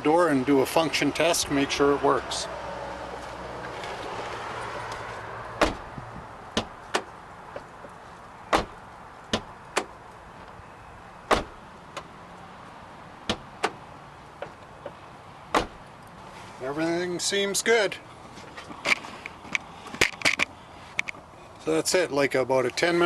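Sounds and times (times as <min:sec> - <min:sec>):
car door latch clicks: 0:05.6 - 0:05.9, 0:08.5 - 0:10.0, 0:11.3 - 0:12.1, 0:13.3 - 0:13.8, 0:14.4 - 0:15.8.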